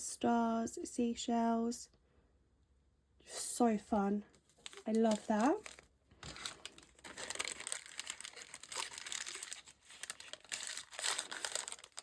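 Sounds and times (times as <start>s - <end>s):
packaging crinkling and rustling: 4.3s - 12.0s.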